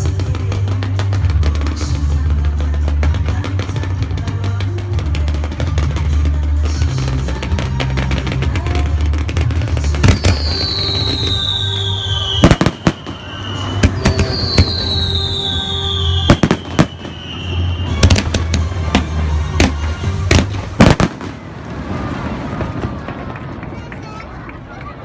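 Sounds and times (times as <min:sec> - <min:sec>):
fireworks bursting: 0:00.0 - 0:24.4
falling firework whistles: 0:09.9 - 0:20.0.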